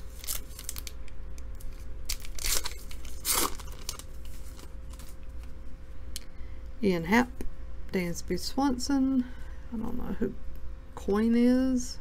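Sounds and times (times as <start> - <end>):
foil wrapper tearing and crinkling: 0.0 - 5.2.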